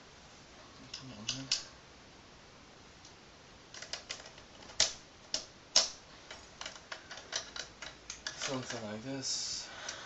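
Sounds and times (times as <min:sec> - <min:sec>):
metal clicks and knocks: 0:03.7 - 0:08.9.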